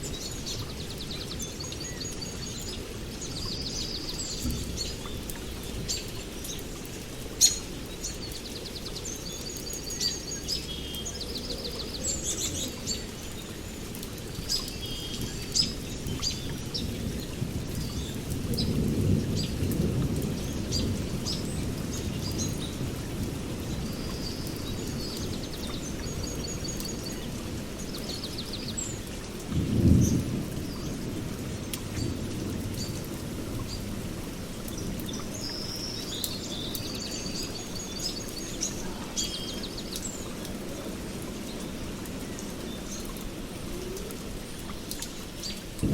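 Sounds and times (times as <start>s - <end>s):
dripping ticks: 0.0s - 45.9s
rain hiss: 0.0s - 45.9s
songbirds chirping and trilling: 0.0s - 45.9s
distant thunder rumbling: 15.8s - 26.4s, 29.4s - 35.3s, 45.7s - 45.9s.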